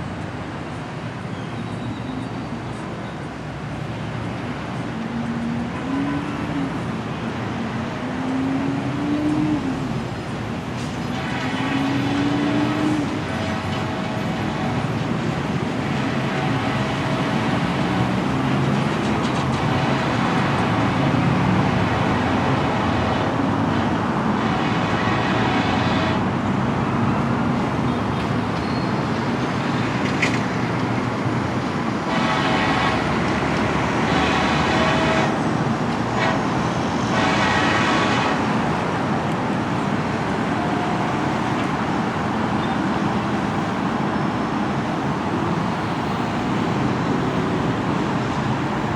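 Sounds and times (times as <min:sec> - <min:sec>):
locomotive air horn blasts: 0:05.0 - 0:06.9, 0:10.8 - 0:18.2, 0:19.5 - 0:27.0, 0:31.8 - 0:41.9.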